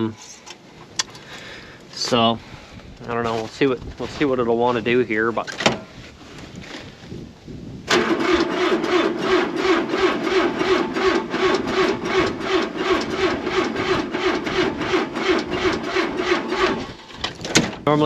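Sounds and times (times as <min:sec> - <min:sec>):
starter cranking engine: 0:07.9 - 0:17.5.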